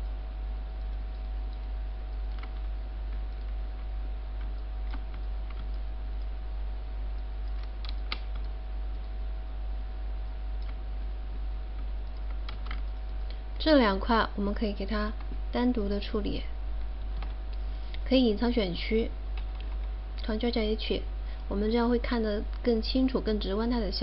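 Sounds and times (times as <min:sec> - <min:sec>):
faint whine: 0:00.0 - 0:24.0
low electrical hum: 0:00.0 - 0:24.0
computer clicks: 0:00.8 - 0:06.3, 0:07.1 - 0:09.2, 0:10.2 - 0:10.8, 0:11.7 - 0:13.7, 0:16.8 - 0:18.1, 0:19.4 - 0:20.4.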